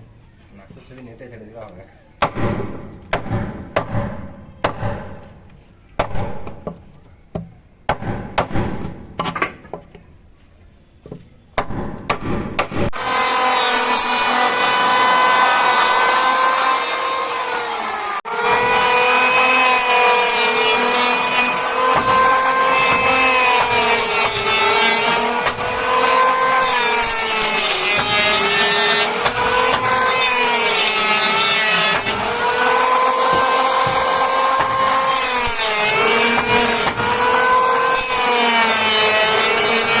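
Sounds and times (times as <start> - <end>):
power tool cutting wood: 12.9 - 40.0.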